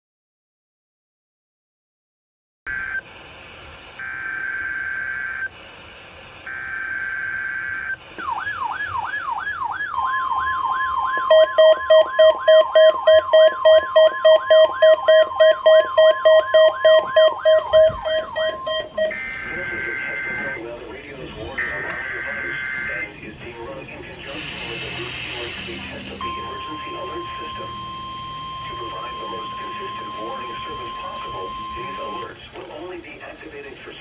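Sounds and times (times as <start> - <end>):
loud pulsing beep: 4.0 - 5.5, 6.5 - 8.6, 11.2 - 20.8, 21.4 - 32.3
raspy digital data bursts: 4.0 - 5.5, 6.4 - 8.0, 11.4 - 20.8, 21.5 - 32.3
steady alarm tone: 4.0 - 5.6, 6.4 - 32.3
warbling siren-like alarm: 4.0 - 5.6, 6.4 - 32.3.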